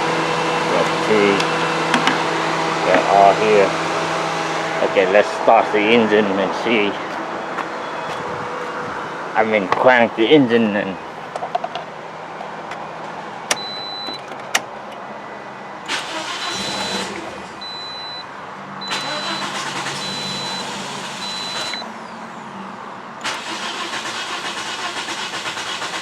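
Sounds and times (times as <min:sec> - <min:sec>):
car engine cranking: 0:00.0 - 0:05.2, 0:12.6 - 0:15.1, 0:15.8 - 0:22.4, 0:23.2 - 0:26.0
short electronic beep: 0:16.6 - 0:18.2, 0:18.8 - 0:21.9.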